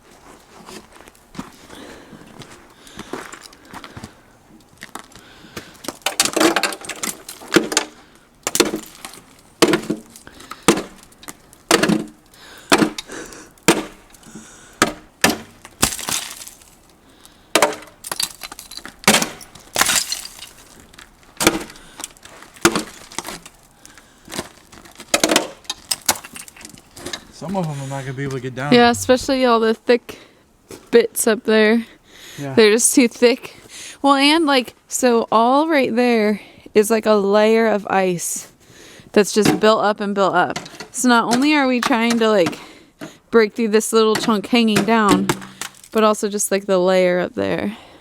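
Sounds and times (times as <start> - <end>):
icicles knocking and cracking: 4.6 - 27.4, 44.1 - 46.0
ice chunks clinking and shattering: 15.4 - 16.9, 17.6 - 26.8.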